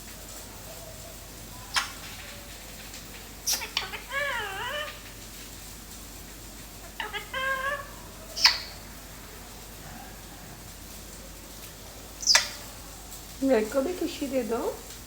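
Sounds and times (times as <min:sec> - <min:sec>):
parrot calling: 0:00.6 - 0:05.6, 0:06.2 - 0:10.7, 0:12.0 - 0:13.1
sharp high parrot chirp: 0:01.7 - 0:02.0, 0:03.4 - 0:05.0, 0:07.0 - 0:08.8, 0:12.2 - 0:12.6.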